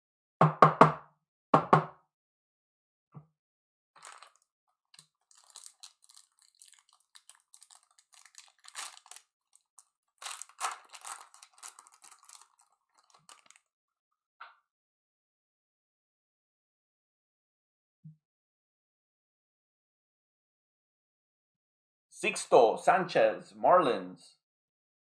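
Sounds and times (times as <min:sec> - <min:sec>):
wrapper crinkling and tearing: 0:04.0 - 0:13.7.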